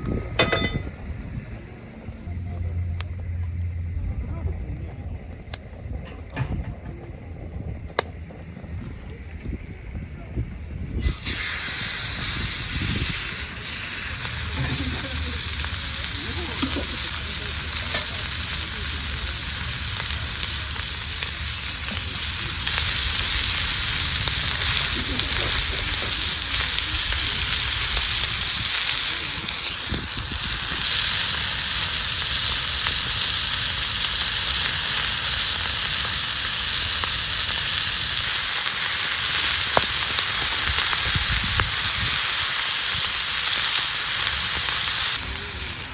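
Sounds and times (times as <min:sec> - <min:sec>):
steak sizzling over campfire: 0:11.0 - 0:45.9.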